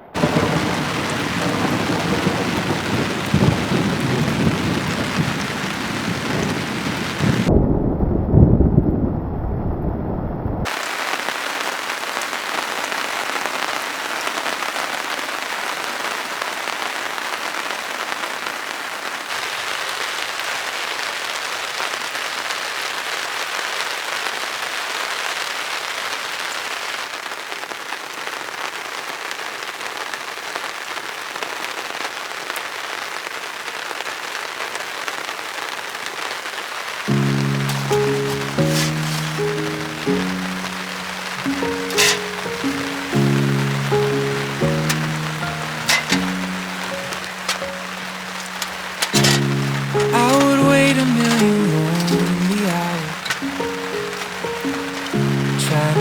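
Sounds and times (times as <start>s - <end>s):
rain falling: 0.0s - 7.6s, 10.6s - 56.0s
thunder rumbling: 0.0s - 10.8s.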